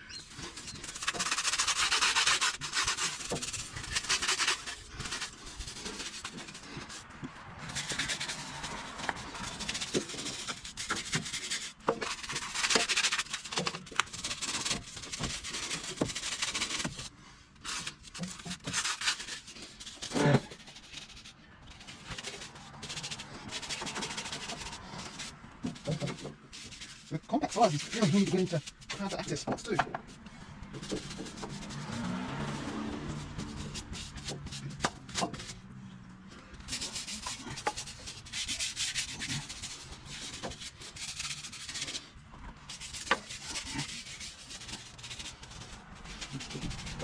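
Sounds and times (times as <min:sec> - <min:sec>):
stiff brush scrubbing a tyre: 0:00.0 - 0:47.0.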